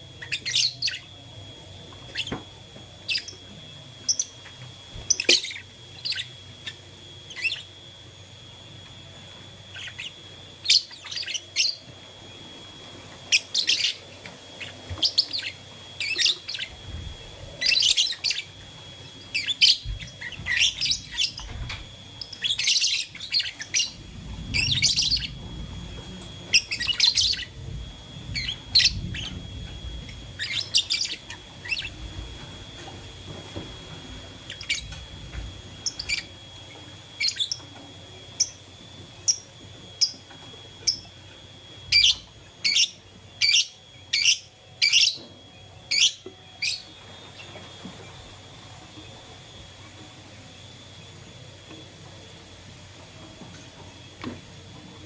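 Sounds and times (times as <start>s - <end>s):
lovebirds chirping: 9.6s - 11.9s, 13.2s - 32.4s.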